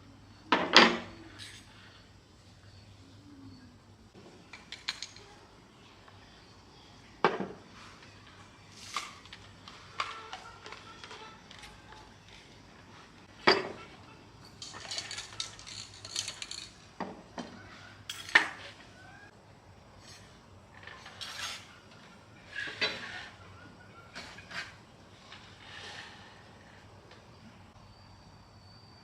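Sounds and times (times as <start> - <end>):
metal tools clinking: 0.7 - 2.0, 4.4 - 5.5, 8.8 - 19.0, 19.9 - 23.3.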